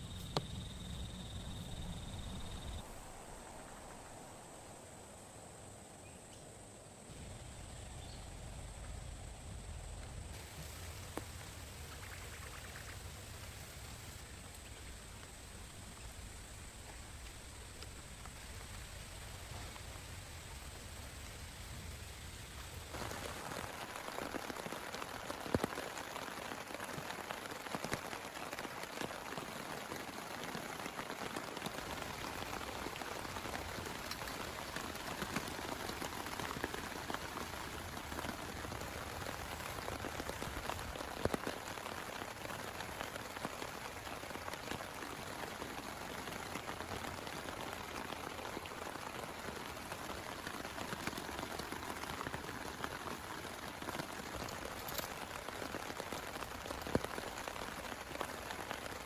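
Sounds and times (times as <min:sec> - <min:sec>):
heavy rain falling: 0:08.4 - 0:59.0.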